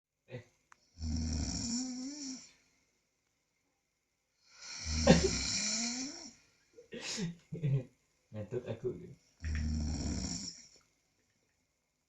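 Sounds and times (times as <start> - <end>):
person snoring: 1.0 - 2.6, 4.4 - 6.4, 9.4 - 10.8.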